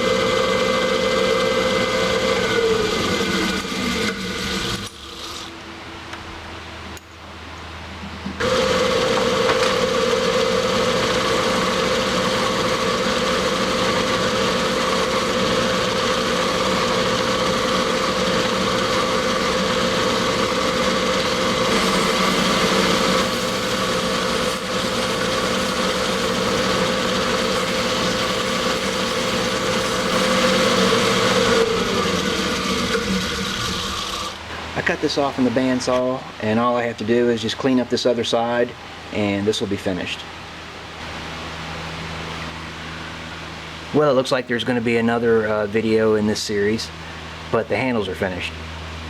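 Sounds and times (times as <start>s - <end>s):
bandsaw cutting metal: 0.0s - 5.5s, 8.4s - 34.4s.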